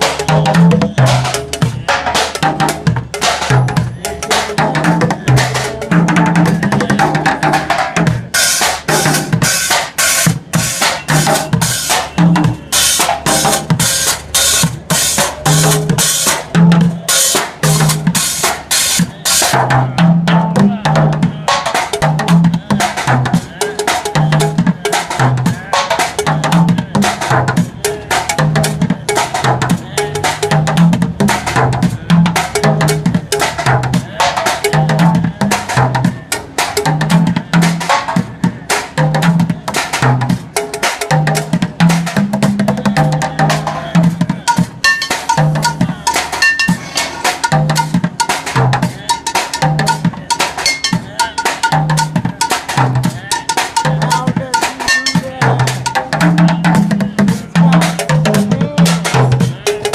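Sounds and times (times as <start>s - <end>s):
drumsticks on buckets and jugs: 44.5s - 59.9s.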